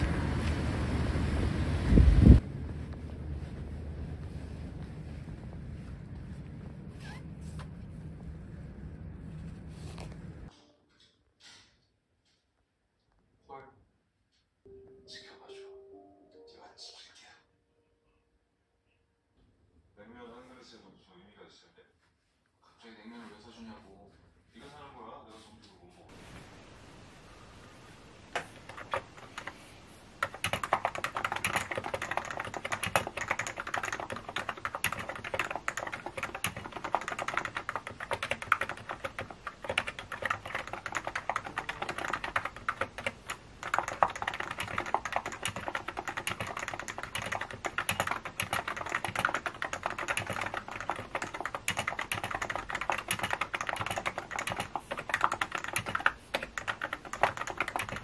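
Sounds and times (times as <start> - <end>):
computer keyboard typing: 28.4 - 29.6, 30.2 - 58.0.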